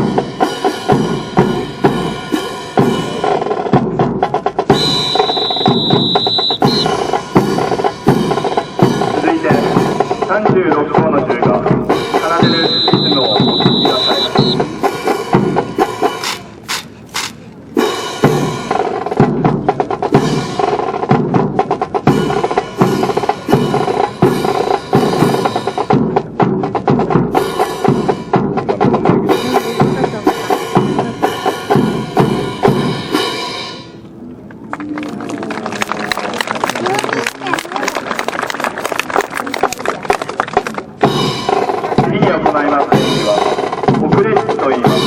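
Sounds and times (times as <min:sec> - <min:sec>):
snare and bass drum beating: 0:00.0 - 0:33.3
brass band playing a march: 0:04.5 - 0:10.2, 0:11.8 - 0:19.2
sharp clacks: 0:16.1 - 0:17.6, 0:34.4 - 0:40.9.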